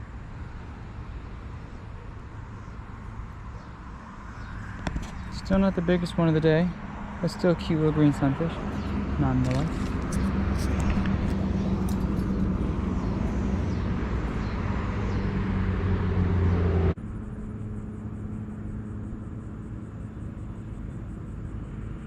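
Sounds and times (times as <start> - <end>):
road traffic engine rumble: 0.0 - 22.0.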